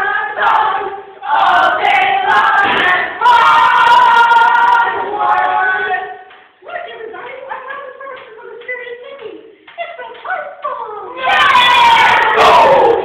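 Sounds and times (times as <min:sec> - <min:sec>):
group of voices chanting in unison: 0:00.0 - 0:06.1, 0:11.2 - 0:13.0.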